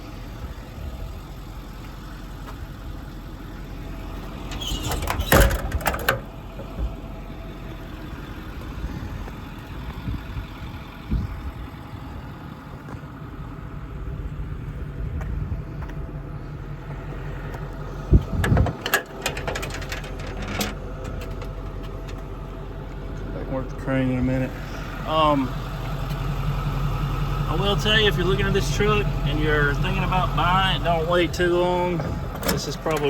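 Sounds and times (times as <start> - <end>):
diesel engine idling: 0.0 - 33.0
sharp knocks and rattles: 4.4 - 7.0, 18.2 - 22.3.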